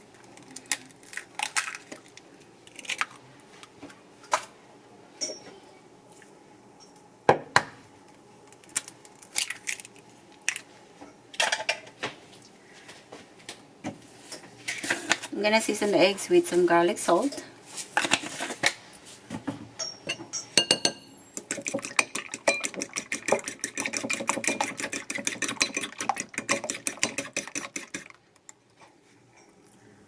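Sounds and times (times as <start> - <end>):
dishes and utensils clinking: 19.8 - 23.0.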